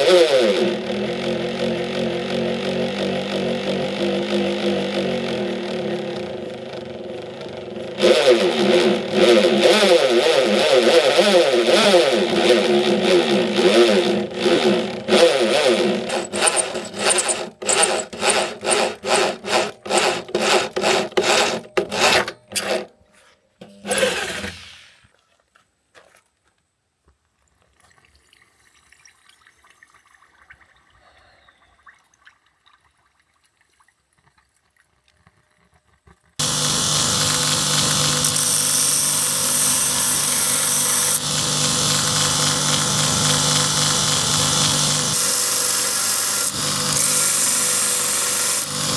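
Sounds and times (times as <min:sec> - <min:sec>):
power tool grinding steel: 0:00.0 - 0:22.9, 0:36.4 - 0:48.9
short scraping strokes: 0:15.4 - 0:23.5.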